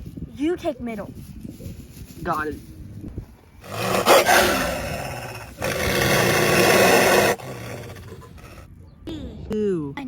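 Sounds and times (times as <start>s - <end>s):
wolves growling and snarling: 3.6s - 8.7s.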